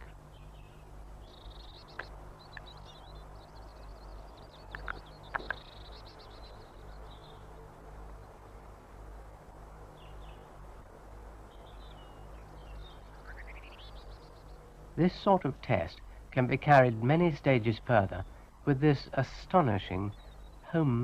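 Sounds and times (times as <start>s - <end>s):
birds twittering: 0.0s - 21.0s
low steady hum: 0.0s - 21.0s.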